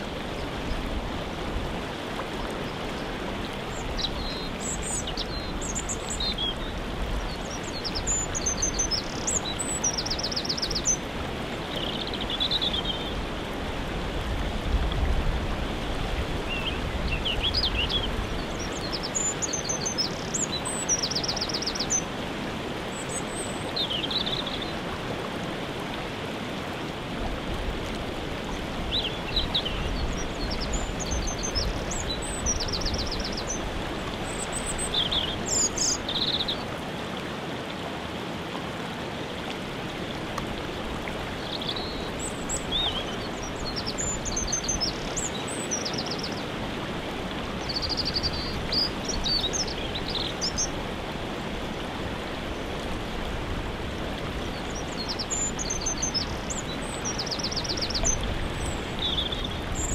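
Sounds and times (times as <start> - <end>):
waterfall rushing: 0.0 - 59.9
songbirds chirping and trilling: 2.4 - 13.3, 28.4 - 36.7, 41.3 - 46.6, 47.5 - 50.9.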